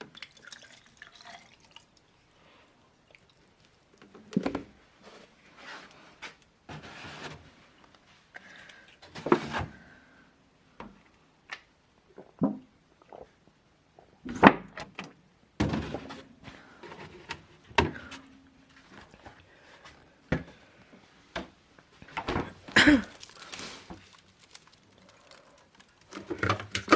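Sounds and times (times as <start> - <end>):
objects knocking and clattering: 15.6 - 16.2.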